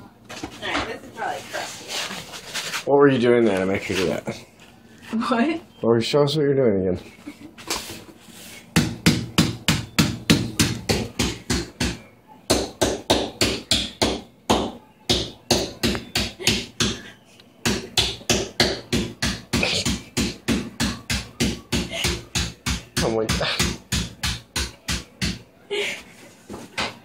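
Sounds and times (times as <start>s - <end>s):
rapid repeated knocking: 8.7s - 25.4s.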